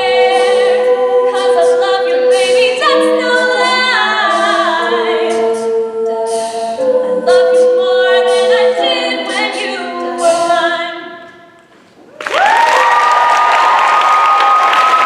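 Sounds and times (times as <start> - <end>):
a cappella group singing in harmony: 0.0 - 11.5.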